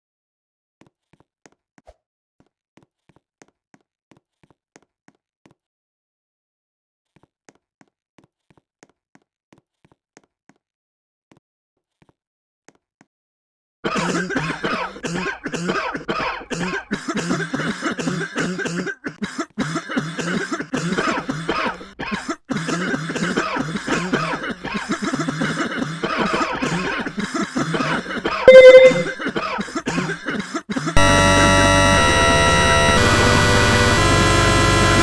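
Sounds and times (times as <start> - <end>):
person coughing: 13.9 - 31.0
loud short beep: 28.5 - 29.2.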